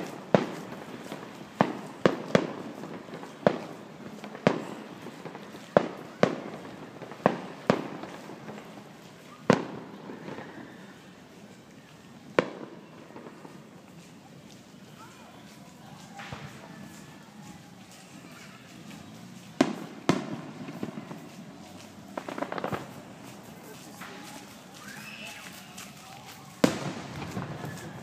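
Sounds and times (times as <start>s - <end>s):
fireworks bangs echoing: 0.0s - 10.6s, 12.4s - 13.7s, 18.0s - 28.0s.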